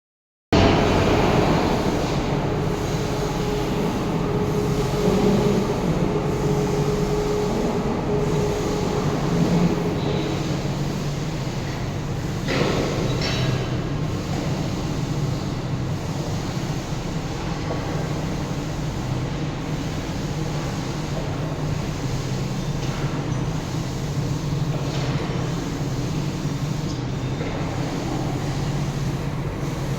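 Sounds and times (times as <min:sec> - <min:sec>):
excavator diesel engine droning: 0:00.6 - 0:10.9.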